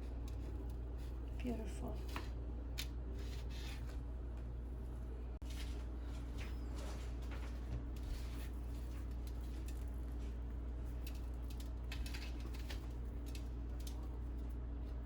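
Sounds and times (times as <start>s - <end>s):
faint clicks and scrapes: 5.4s - 15.0s.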